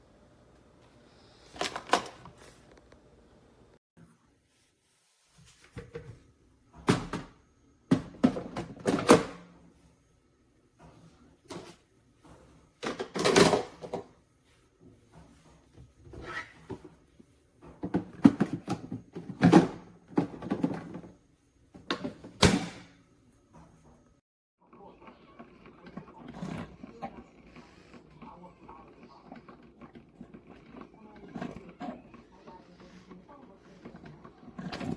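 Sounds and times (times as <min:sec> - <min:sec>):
objects knocking and rattling: 0:12.8 - 0:14.1, 0:17.6 - 0:21.2, 0:25.1 - 0:34.9.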